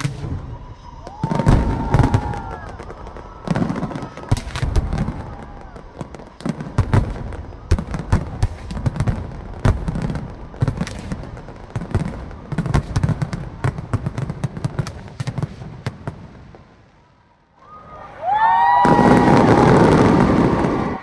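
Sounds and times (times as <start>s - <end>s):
fireworks bangs: 0.0s - 16.8s, 17.6s - 21.0s.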